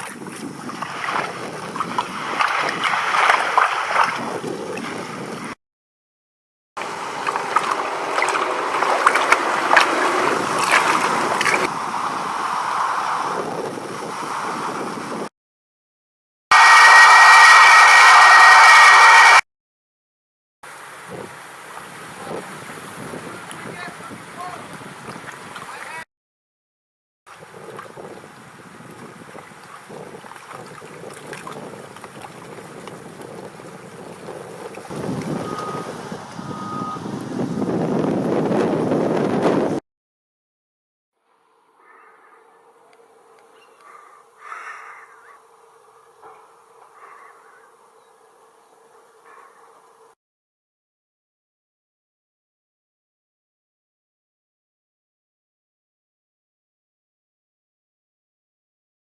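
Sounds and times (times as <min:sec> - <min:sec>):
sharp splashes: 0:00.0 - 0:04.9, 0:06.8 - 0:13.4
water rushing against boat hull: 0:00.0 - 0:05.6, 0:06.8 - 0:15.2, 0:20.7 - 0:26.0, 0:27.3 - 0:39.8
wind noise: 0:00.0 - 0:05.6, 0:06.8 - 0:15.3, 0:21.0 - 0:26.0, 0:27.3 - 0:39.8
heavy machine engine: 0:06.9 - 0:12.1, 0:16.5 - 0:19.4, 0:35.3 - 0:37.1
backup alarm beep: 0:35.3 - 0:37.1.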